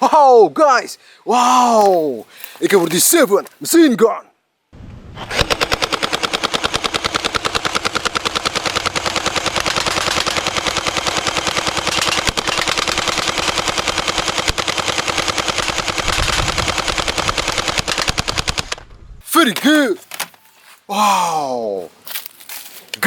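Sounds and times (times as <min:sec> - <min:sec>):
toy machine gun rattling: 0:05.5 - 0:18.8.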